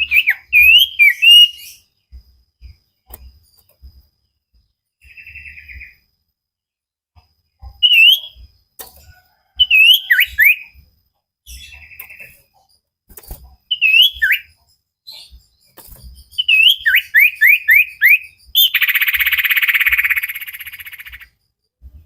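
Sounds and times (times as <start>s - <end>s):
rapid bird trill: 0.0s - 2.0s, 5.0s - 6.1s, 7.6s - 8.6s, 11.4s - 21.5s
bird whistling song: 0.0s - 2.8s, 5.0s - 6.1s, 7.7s - 8.6s, 9.6s - 10.8s, 13.6s - 21.4s.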